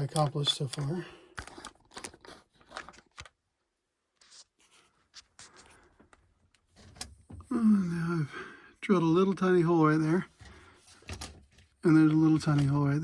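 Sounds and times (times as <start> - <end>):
small parts and tools clicking: 0.0 - 3.3.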